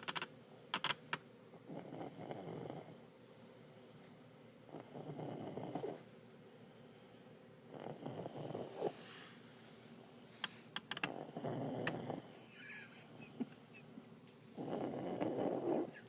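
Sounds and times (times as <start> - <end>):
baby snoring: 4.7 - 6.1, 7.7 - 9.2, 11.0 - 12.4, 14.6 - 16.0.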